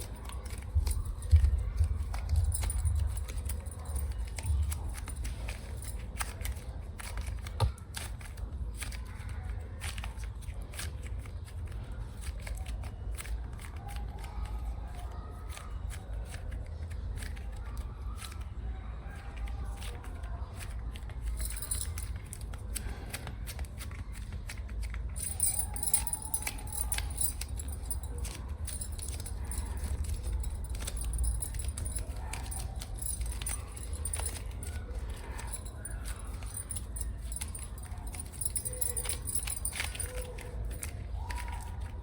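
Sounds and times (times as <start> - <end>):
fingernails tapping on packaging: 0.0 - 18.6.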